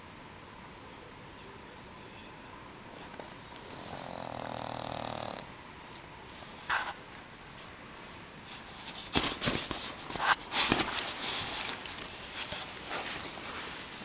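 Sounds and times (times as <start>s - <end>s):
dog snoring: 3.1s - 5.6s.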